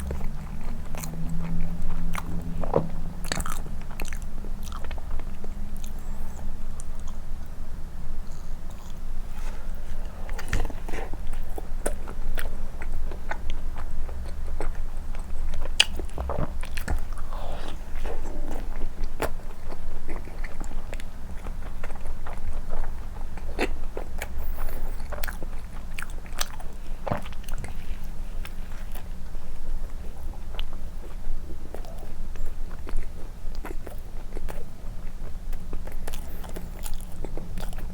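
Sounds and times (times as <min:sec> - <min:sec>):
close chewing with wet mouth clicks: 0:00.0 - 0:37.9
steady low hum: 0:00.0 - 0:37.9.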